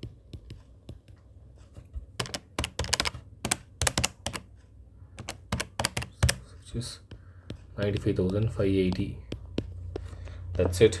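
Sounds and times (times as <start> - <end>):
keyboard typing clicks: 2.2 - 4.5, 5.2 - 6.5.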